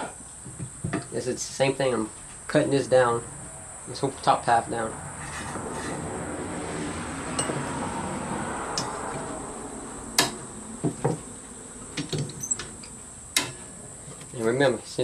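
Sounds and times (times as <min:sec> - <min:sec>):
high insect drone: 0:00.0 - 0:15.0
file rasping on steel blade: 0:05.2 - 0:06.0
metallic clinks and taps: 0:07.4 - 0:07.6.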